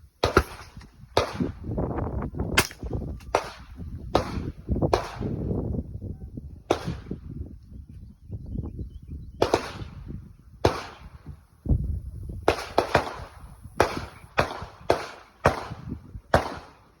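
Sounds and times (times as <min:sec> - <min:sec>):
rifle shots: 0:00.2 - 0:01.6, 0:02.6 - 0:05.4, 0:06.7 - 0:07.2, 0:09.4 - 0:10.0, 0:10.6 - 0:11.2, 0:12.5 - 0:16.9.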